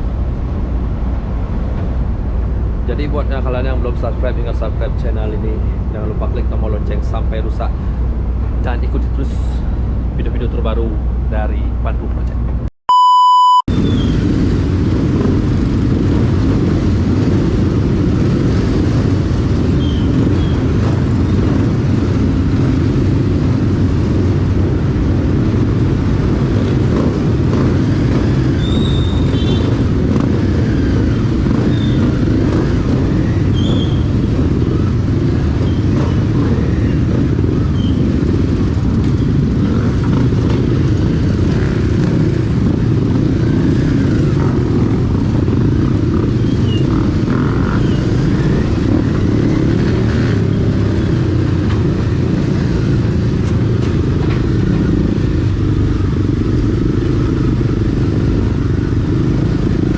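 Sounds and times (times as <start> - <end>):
motorcycle engine rumbling: 13.7 - 59.9.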